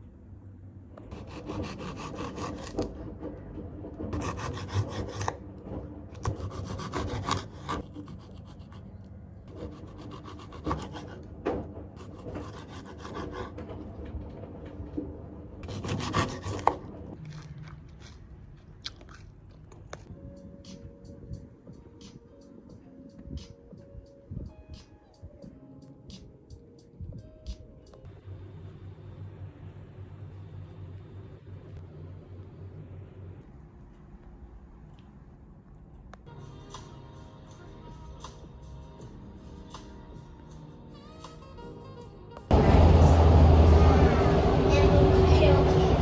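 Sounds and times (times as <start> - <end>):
pen scratching on paper: 1.1 - 3.0, 4.2 - 5.4, 6.2 - 11.2, 12.0 - 13.9, 15.6 - 16.9.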